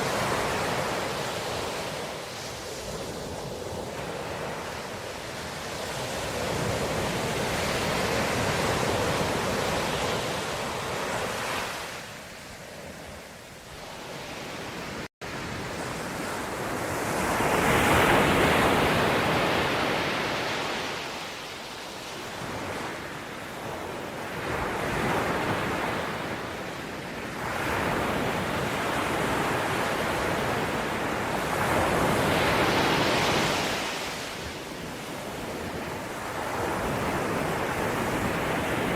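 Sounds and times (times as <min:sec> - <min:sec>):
ocean waves breaking on shore: 0:00.0 - 0:38.9.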